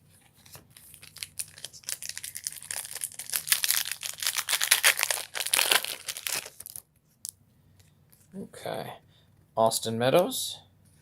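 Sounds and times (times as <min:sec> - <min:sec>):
foil wrapper crinkling: 0:00.5 - 0:06.8.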